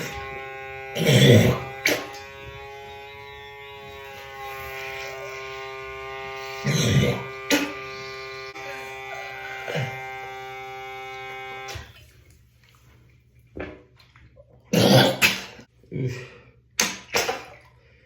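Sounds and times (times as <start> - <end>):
suction pump humming: 0.0 - 12.8
person coughing and spluttering: 1.0 - 2.3, 6.7 - 7.8, 9.6 - 10.0, 14.6 - 17.8.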